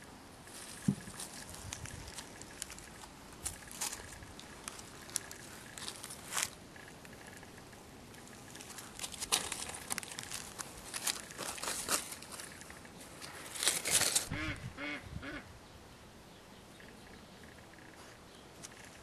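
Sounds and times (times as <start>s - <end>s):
rustling and scratching: 0.4s - 14.3s, 17.7s - 19.0s.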